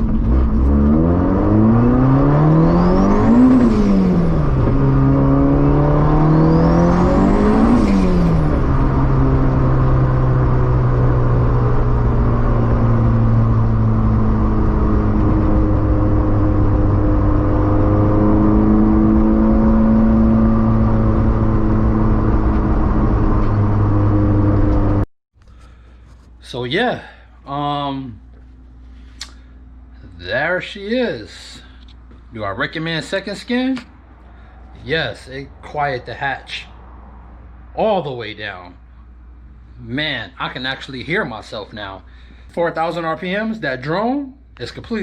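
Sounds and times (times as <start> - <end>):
car engine revving from inside cabin: 0.0 - 25.1.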